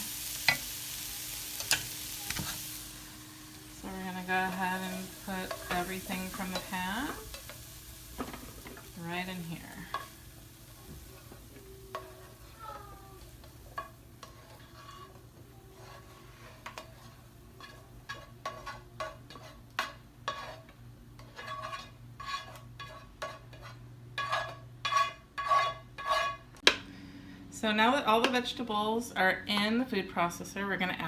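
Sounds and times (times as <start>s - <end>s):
utensil scraping and knocking pan: 13.7s - 26.4s.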